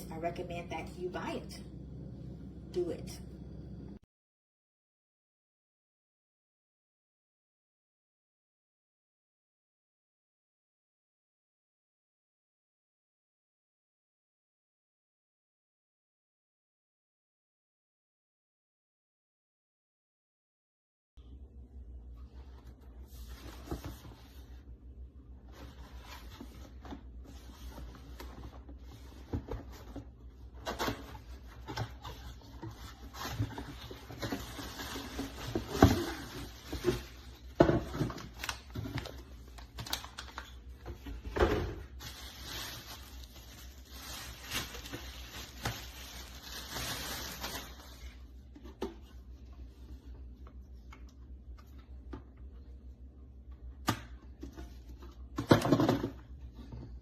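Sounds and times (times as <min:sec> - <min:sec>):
rustling: 0:41.9 - 0:48.2.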